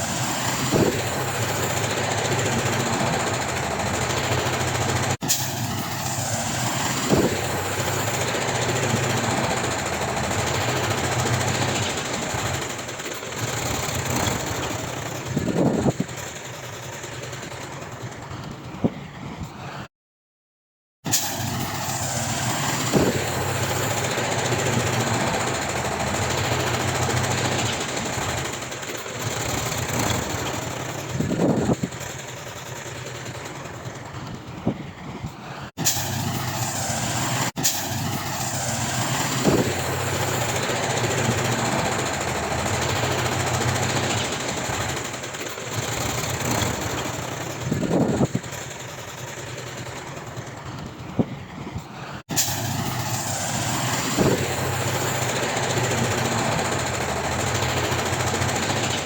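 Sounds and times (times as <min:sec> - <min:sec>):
heavy diesel machinery running: 0:00.0 - 0:19.9, 0:21.1 - 0:59.0.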